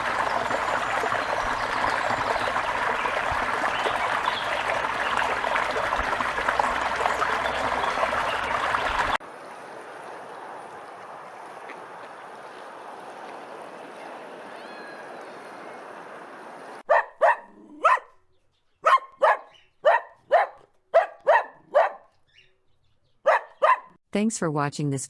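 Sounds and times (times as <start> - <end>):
dog barking: 16.8 - 18.2, 18.8 - 22.1, 23.2 - 24.0.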